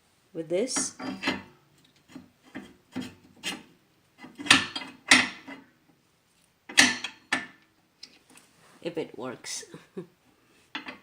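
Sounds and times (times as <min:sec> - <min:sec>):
metal bolt scraping and rasping: 0:00.7 - 0:05.7, 0:06.7 - 0:07.6, 0:10.7 - 0:11.0.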